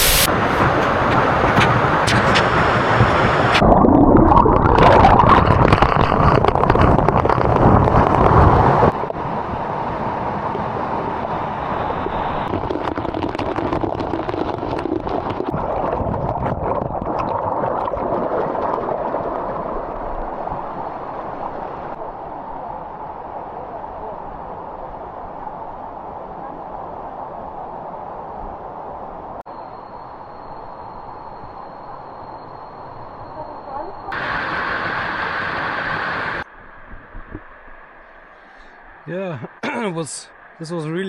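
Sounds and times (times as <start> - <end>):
waterfall rushing: 0.0 - 3.7, 34.2 - 36.5.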